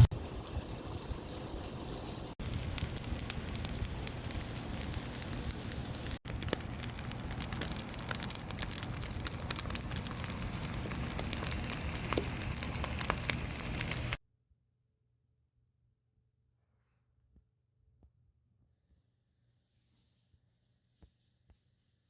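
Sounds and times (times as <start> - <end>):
food sizzling in a pan: 0.0 - 14.2.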